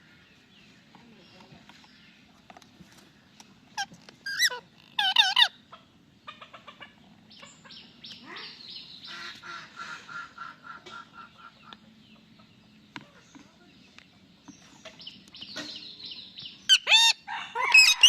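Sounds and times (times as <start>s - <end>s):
parrot warbling calls: 3.8s - 5.6s, 16.7s - 18.0s.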